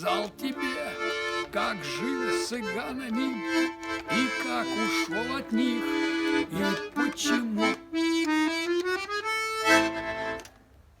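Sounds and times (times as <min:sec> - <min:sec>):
accordion playing: 0:00.0 - 0:10.6.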